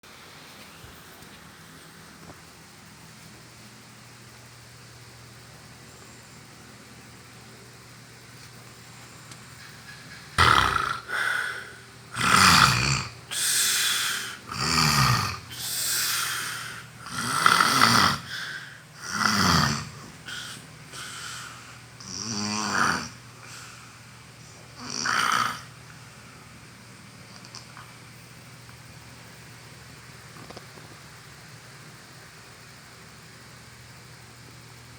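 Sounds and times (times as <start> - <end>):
person snoring loudly: 10.4 - 23.9, 24.7 - 25.8.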